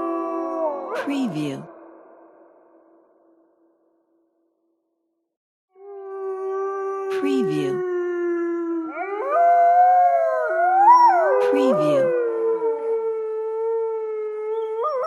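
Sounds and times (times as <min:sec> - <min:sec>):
wolves howling: 0:00.0 - 0:01.3, 0:05.8 - 0:15.0.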